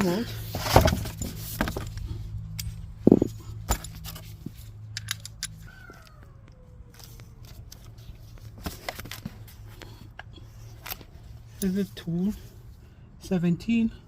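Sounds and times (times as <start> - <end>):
hand tools clicking and tapping: 1.0 - 7.8.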